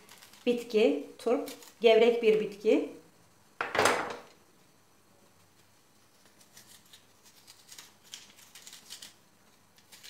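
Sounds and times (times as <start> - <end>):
knife scraping radish: 0.0 - 1.9, 5.4 - 10.0.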